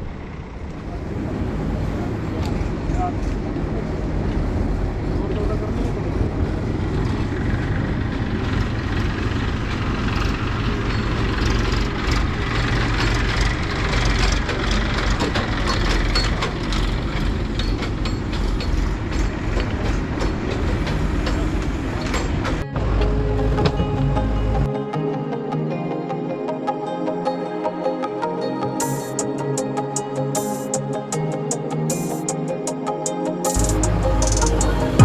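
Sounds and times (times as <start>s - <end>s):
diesel engine running: 0.0s - 24.7s, 33.6s - 35.0s
machine clanks and rattles: 6.9s - 24.0s.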